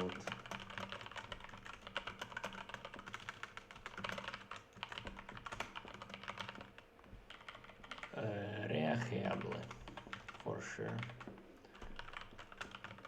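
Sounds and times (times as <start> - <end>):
rapid typing on keyboard: 0.0 - 13.0.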